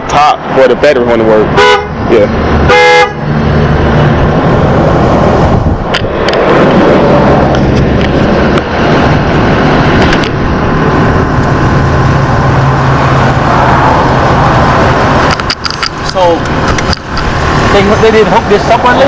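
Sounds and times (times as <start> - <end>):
loud rushing noise: 0.0 - 19.0
vehicle engine humming: 0.0 - 19.0
sharp clicks: 15.2 - 17.3.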